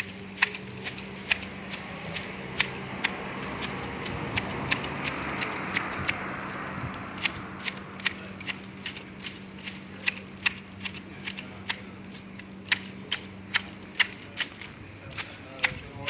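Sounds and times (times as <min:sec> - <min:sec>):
pruning shears snipping: 0:00.0 - 0:16.0.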